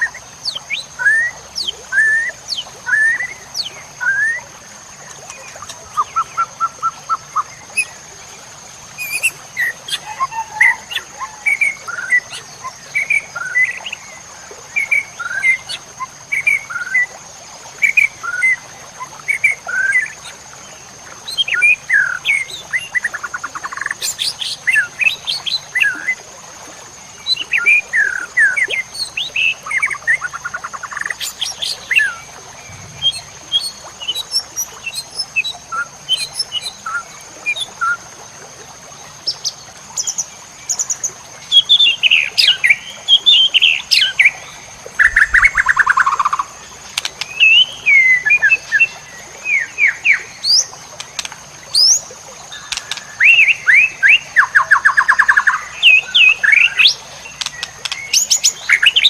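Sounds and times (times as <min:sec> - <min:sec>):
bird singing whistled song: 0:09.0 - 0:13.9, 0:27.3 - 0:38.0.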